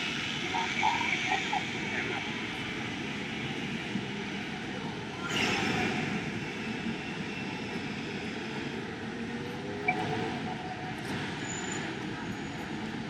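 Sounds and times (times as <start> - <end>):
city street traffic rumble: 0.0 - 13.0.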